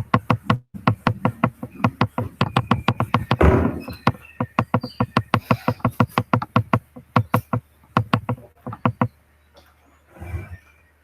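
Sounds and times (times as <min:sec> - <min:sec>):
rapid sharp clicks: 0:04.0 - 0:09.2.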